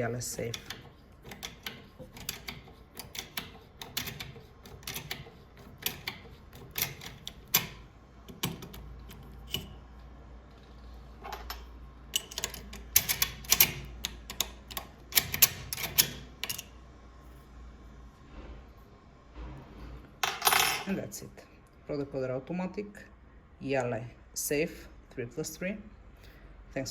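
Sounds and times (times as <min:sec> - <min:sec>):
metallic clicking in a lock: 0:00.4 - 0:09.8, 0:12.2 - 0:16.7.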